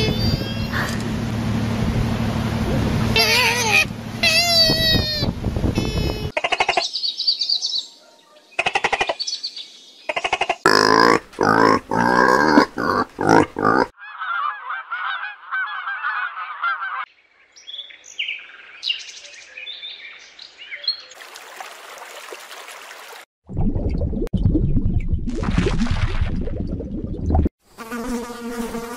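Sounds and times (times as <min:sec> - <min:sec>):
harsh honking animal calls: 0:03.1 - 0:06.5, 0:10.7 - 0:17.1.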